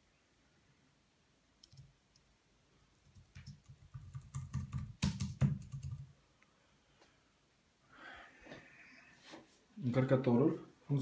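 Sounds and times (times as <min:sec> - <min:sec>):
keyboard keys clicking: 0:03.1 - 0:06.0.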